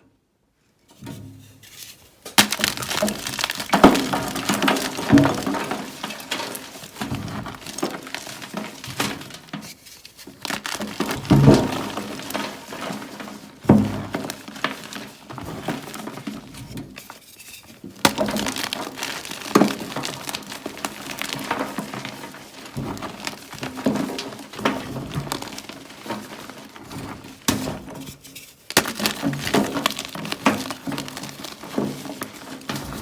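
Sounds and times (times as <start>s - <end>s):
crunchy bites of chalk: 2.3s - 9.2s, 10.2s - 12.9s, 18.0s - 27.7s, 28.7s - 33.0s
chewing and crunching: 2.4s - 9.0s.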